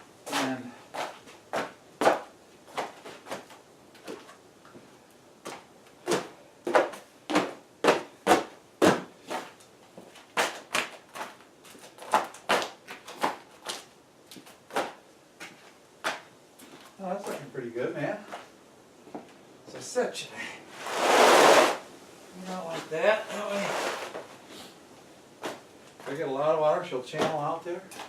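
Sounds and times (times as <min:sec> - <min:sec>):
plastic mat knocking on concrete: 0:06.1 - 0:09.1.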